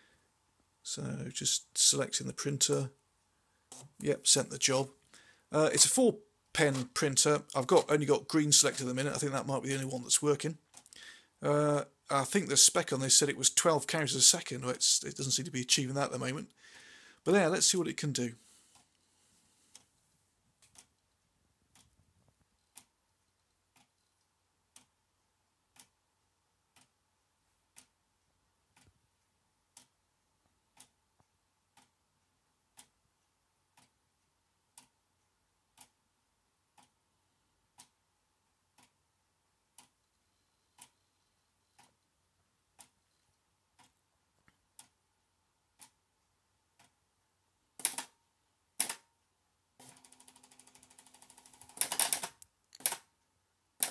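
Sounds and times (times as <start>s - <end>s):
quiet ticks: 17.6s - 19.1s, 19.7s - 39.1s, 39.7s - 45.0s, 45.7s - 47.0s.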